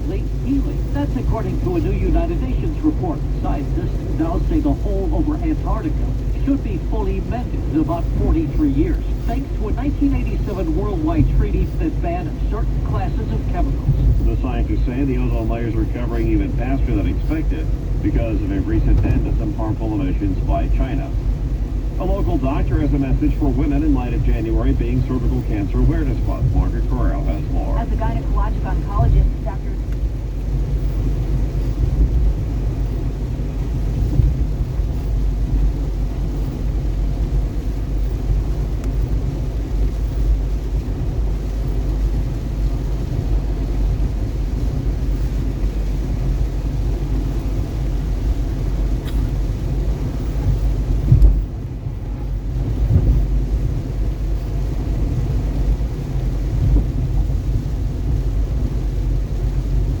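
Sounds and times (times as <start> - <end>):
car driving on wet road: 0.0 - 60.0
gusty wind: 0.0 - 60.0
heavy rain: 0.0 - 60.0
loud thump: 50.5 - 51.5.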